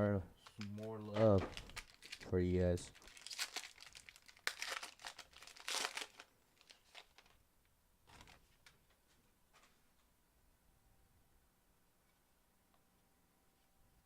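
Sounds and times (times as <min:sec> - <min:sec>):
packaging crinkling and tearing: 0:00.5 - 0:02.3, 0:02.9 - 0:07.4, 0:08.1 - 0:08.5.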